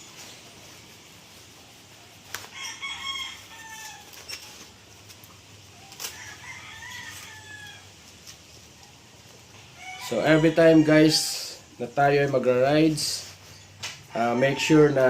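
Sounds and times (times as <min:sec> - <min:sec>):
rooster crowing: 0:02.4 - 0:04.2, 0:06.0 - 0:08.0, 0:09.7 - 0:11.6, 0:14.1 - 0:15.0.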